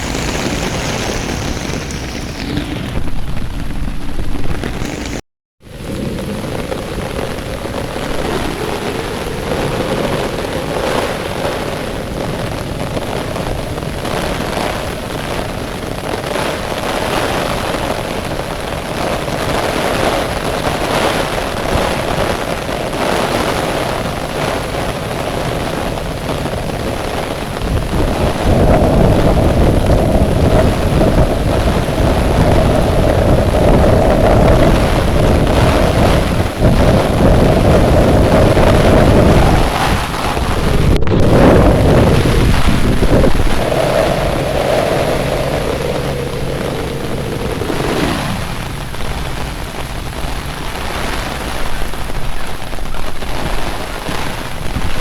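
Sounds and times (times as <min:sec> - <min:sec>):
heavy rain hissing: 0:00.0 - 0:55.0
low rumble: 0:27.9 - 0:52.0.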